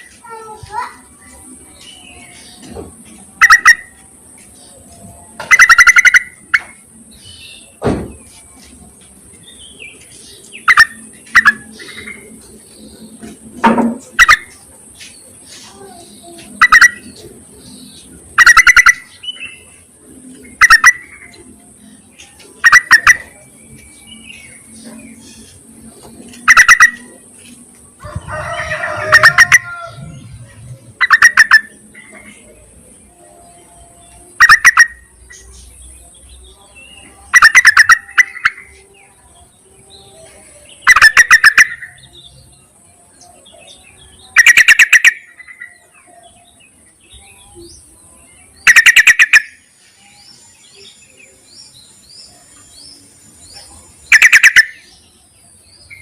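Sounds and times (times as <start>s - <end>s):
bird chattering calls: 1.8s - 4.1s, 5.4s - 6.8s, 9.9s - 12.5s, 14.0s - 19.8s, 20.4s - 23.5s, 26.3s - 27.2s, 29.0s - 32.4s, 34.3s - 35.6s, 37.3s - 38.8s, 40.8s - 42.0s, 44.3s - 45.8s, 48.6s - 49.7s, 54.0s - 55.0s.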